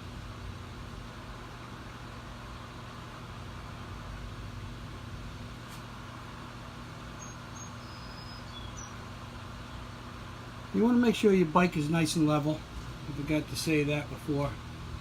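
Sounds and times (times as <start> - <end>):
low mechanical hum with hiss: 0.0 - 15.0
faint high chirps: 7.2 - 9.0.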